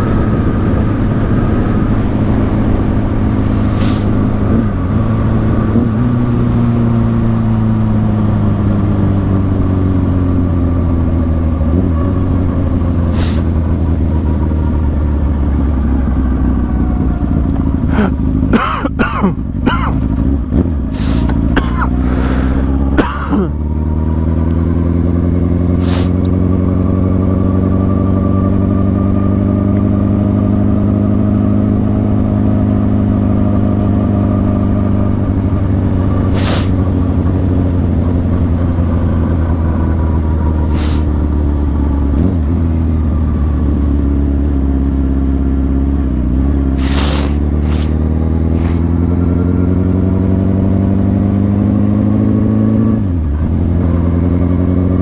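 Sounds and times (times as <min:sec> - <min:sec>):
motorcycle engine cruising: 0:00.0 - 0:55.0.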